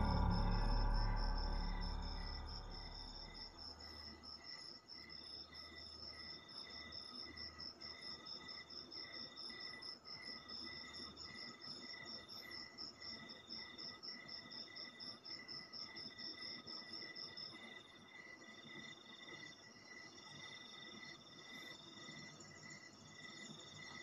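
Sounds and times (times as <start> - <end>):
night insects trilling: 0.0 - 3.8.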